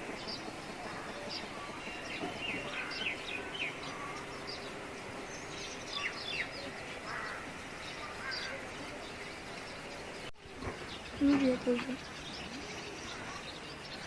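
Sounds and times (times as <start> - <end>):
outdoor background hiss: 0.0 - 14.0
small birds chirping: 0.0 - 14.0.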